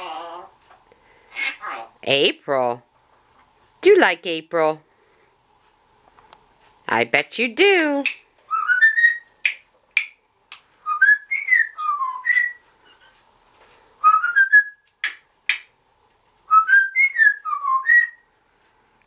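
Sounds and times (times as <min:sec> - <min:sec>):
parrot whistling: 0:08.5 - 0:09.6, 0:10.8 - 0:12.6, 0:14.0 - 0:14.9, 0:16.5 - 0:18.3
parrot clicks: 0:09.4 - 0:10.7.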